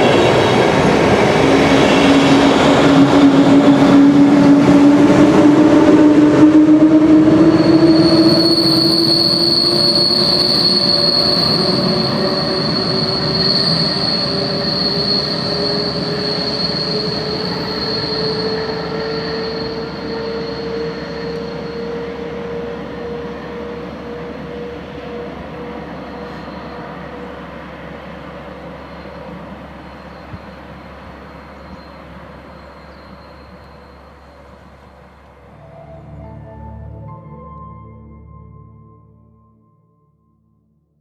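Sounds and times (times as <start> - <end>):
locomotive wheels squealing: 7.3 - 27.6, 28.4 - 35.6.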